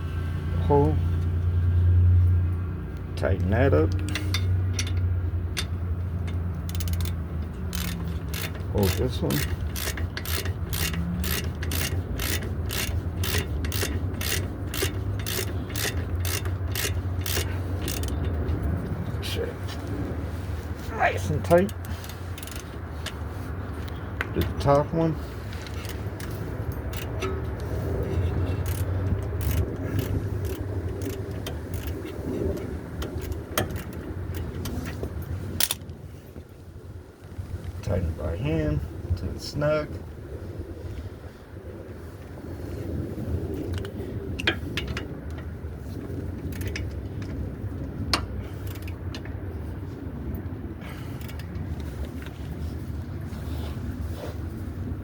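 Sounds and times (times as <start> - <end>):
hand ratchet clicking: 3.4 - 18.7, 21.5 - 23.2, 25.5 - 35.8, 48.6 - 49.0, 51.1 - 51.5.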